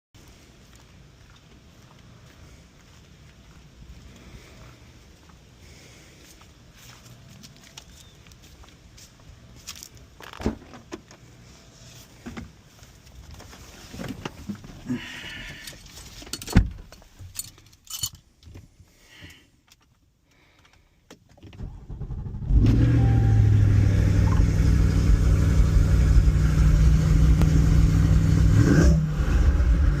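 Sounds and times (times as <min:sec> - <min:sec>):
sports car engine running: 0:22.0 - 0:30.0.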